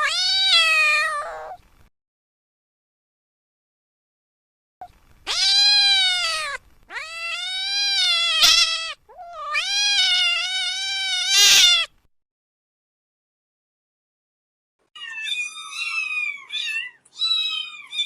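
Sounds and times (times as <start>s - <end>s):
cat meowing: 0.0s - 1.6s, 5.2s - 11.9s, 15.0s - 18.0s.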